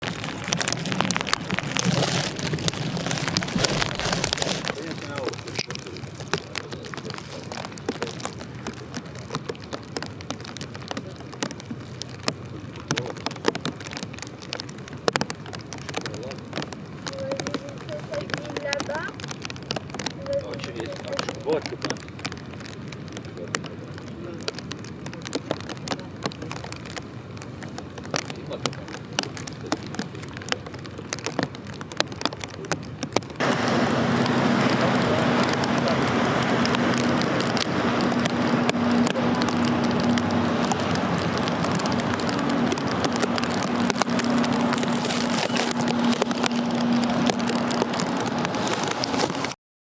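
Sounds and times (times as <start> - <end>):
low engine hum: 0.0 - 10.8, 33.4 - 49.6
rush of outdoor noise: 0.0 - 49.6
small crackles: 0.0 - 49.6
faint distant voices: 33.4 - 49.2.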